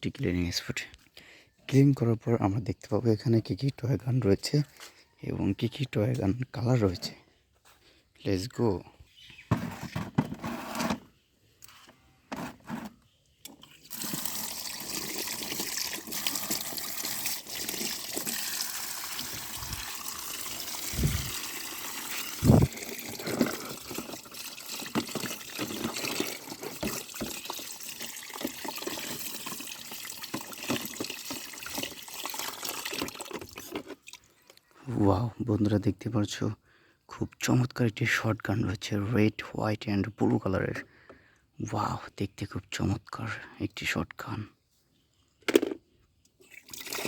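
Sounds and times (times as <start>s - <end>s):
running water splashing: 13.8s - 33.7s.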